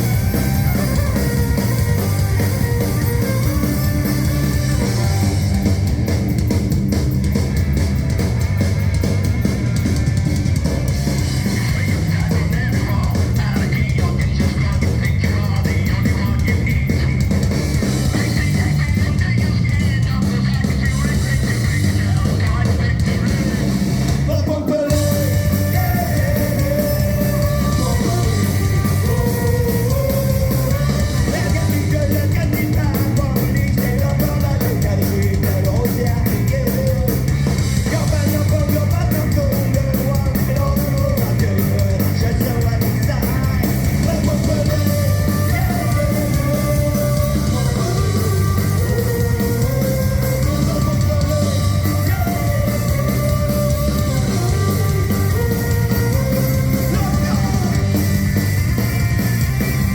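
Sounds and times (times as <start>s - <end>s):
drums: 0.0s - 59.9s
punk rock band playing live: 0.0s - 59.9s
person singing: 11.4s - 23.6s, 24.2s - 59.9s.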